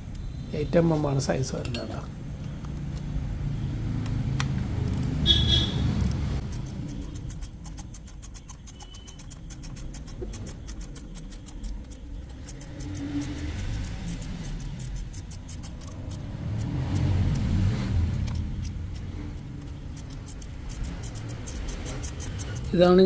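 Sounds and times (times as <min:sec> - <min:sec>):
vehicle rumble: 0:00.0 - 0:07.3, 0:12.0 - 0:23.0
rapid light clicking: 0:04.0 - 0:23.0.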